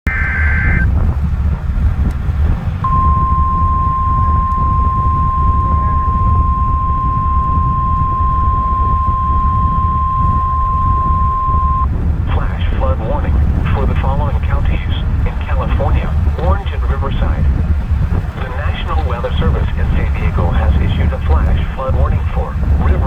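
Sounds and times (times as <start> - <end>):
digital data screech: 0.1 - 0.8
steady alarm beep: 0.1 - 0.9, 2.9 - 11.9.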